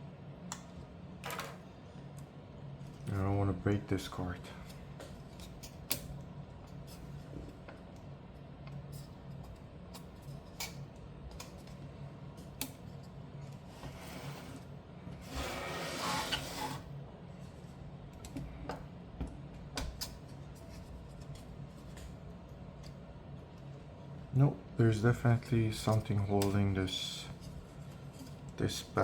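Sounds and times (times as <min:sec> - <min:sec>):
low steady hum: 0:00.0 - 0:29.0
scraping rub: 0:15.2 - 0:16.9.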